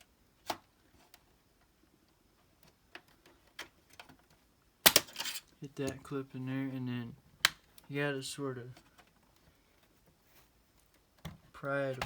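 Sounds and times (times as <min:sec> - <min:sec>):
sharp loud plastic click: 0:04.8 - 0:05.1.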